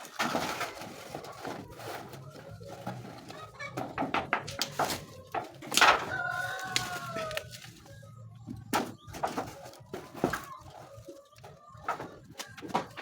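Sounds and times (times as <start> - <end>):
scattered knocks and clatter: 0.0 - 6.1, 8.5 - 13.0
rooster crowing: 5.9 - 7.5.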